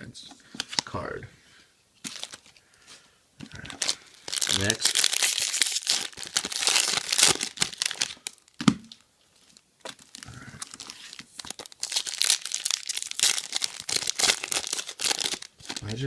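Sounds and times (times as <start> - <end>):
foil wrapper tearing and crinkling: 2.0 - 2.4, 3.7 - 8.6, 10.0 - 16.0.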